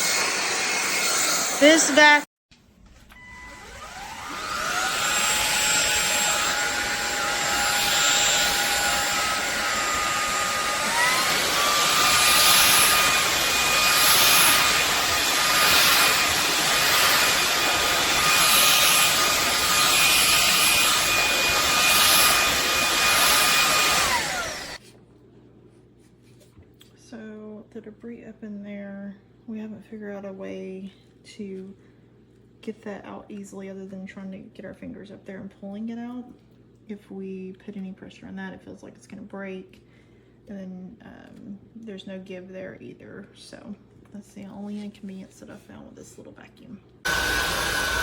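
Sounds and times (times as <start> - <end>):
vacuum cleaner motor whine: 0.0 - 2.2, 3.0 - 24.8, 47.1 - 48.0.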